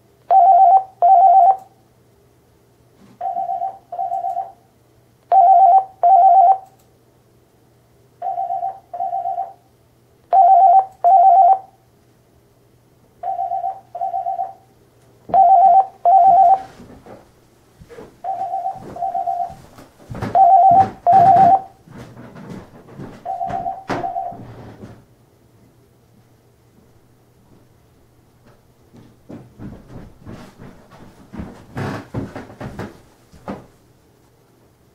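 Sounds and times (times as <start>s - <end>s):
telephone ringing with warbling trills: 0.3s - 1.7s, 3.2s - 4.6s, 5.3s - 6.7s, 8.2s - 9.6s, 10.3s - 11.7s, 13.2s - 14.7s, 15.3s - 16.7s, 18.2s - 19.6s, 20.4s - 21.7s, 23.3s - 24.4s
knocks: 18.4s - 25.0s, 29.3s - 33.7s.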